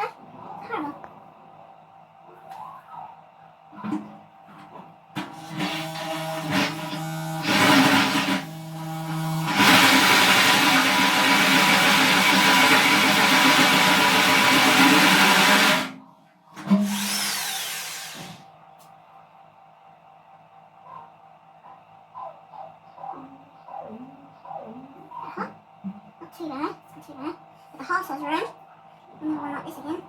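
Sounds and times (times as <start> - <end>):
drill hole saw grinding steel: 5.3 - 16.0, 16.7 - 18.4.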